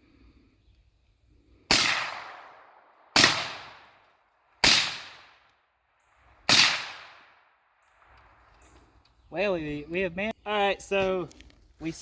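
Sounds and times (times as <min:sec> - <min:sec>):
rifle shots echoing: 0:01.7 - 0:05.5, 0:06.4 - 0:08.2.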